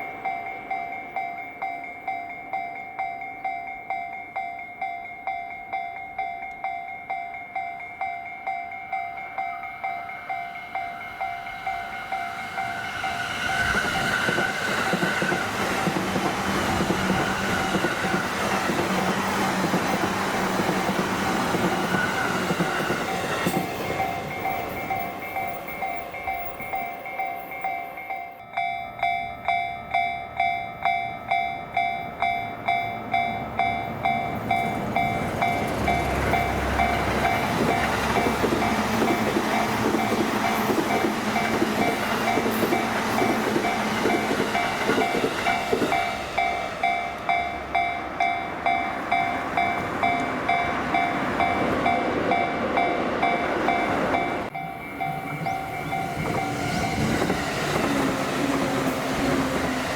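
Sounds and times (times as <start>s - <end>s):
level crossing warning bell: 0.0s - 59.9s
rumble of passing trains: 0.0s - 59.9s
train wheels clacking: 9.4s - 28.2s, 32.2s - 59.9s.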